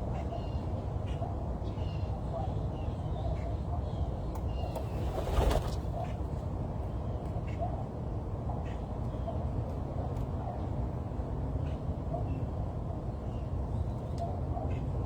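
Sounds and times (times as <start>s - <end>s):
rustle: 4.6s - 6.0s.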